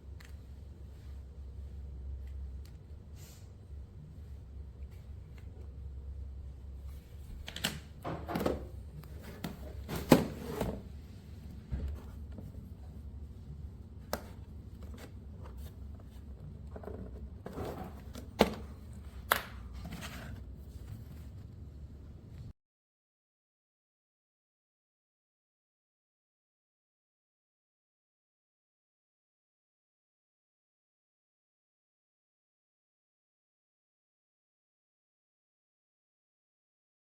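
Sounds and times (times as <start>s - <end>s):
low steady rumble: 0.0s - 9.9s, 10.6s - 22.5s.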